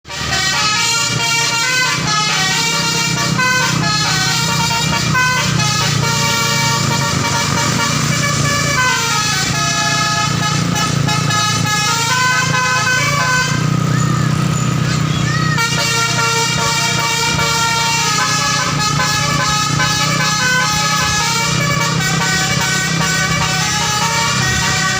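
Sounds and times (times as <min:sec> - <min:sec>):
bus musical horn playing a tune: 0:00.0 - 0:24.9.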